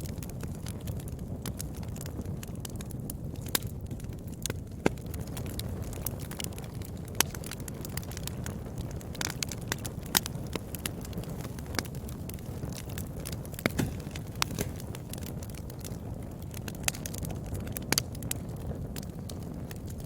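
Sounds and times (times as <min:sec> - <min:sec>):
wood fire crackling: 0:00.0 - 0:20.0
sharp loud pops: 0:13.6 - 0:15.2.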